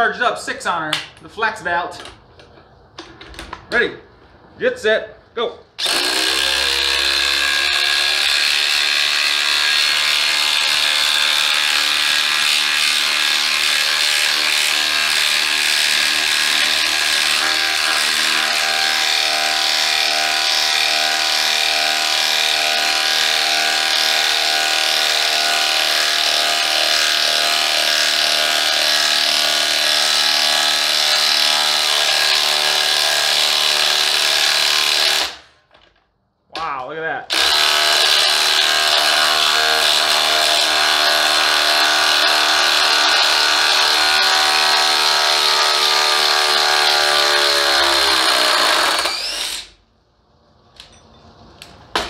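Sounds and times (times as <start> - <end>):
impact driver hammering: 5.8 - 35.6.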